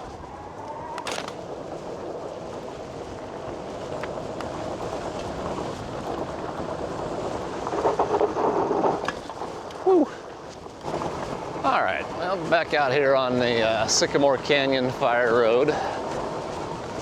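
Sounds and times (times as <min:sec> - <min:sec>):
bike frame rattling: 0:00.0 - 0:17.0
bike tyres rumbling on dirt: 0:00.0 - 0:17.0.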